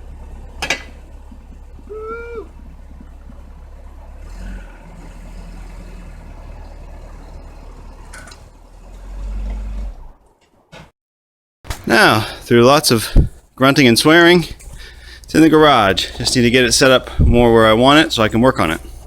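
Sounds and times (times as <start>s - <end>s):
low engine rumble: 0.0s - 10.4s, 11.7s - 19.0s.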